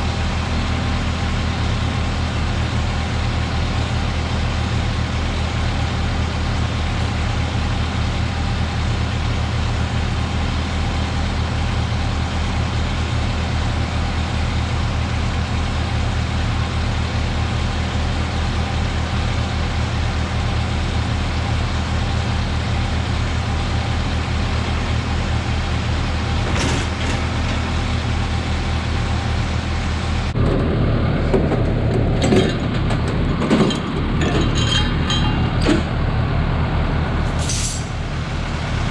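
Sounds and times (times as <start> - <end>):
tractor diesel engine running: 0.0 - 38.9
sharp metal clanks: 33.5 - 36.0, 37.3 - 38.0.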